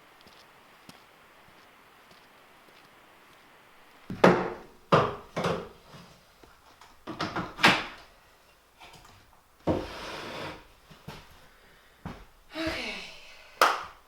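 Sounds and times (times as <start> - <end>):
sharp knocks and clunks: 4.1 - 5.8.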